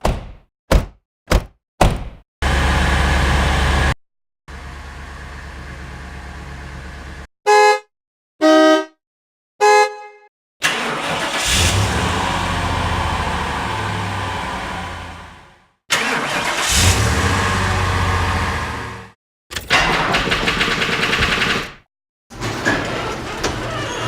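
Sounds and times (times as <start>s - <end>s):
car engine starting and running: 2.4s - 7.3s, 10.6s - 20.7s
car horn honks: 7.5s - 9.0s, 9.6s - 10.3s.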